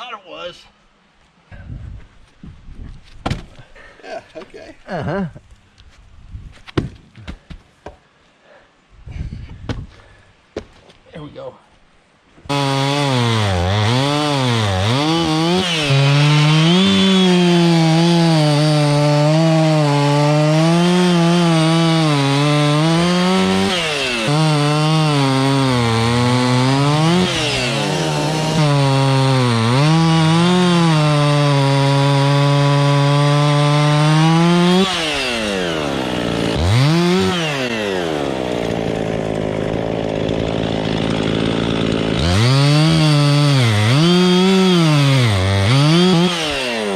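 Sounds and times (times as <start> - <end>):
chainsaw cutting wood: 12.5 - 46.9.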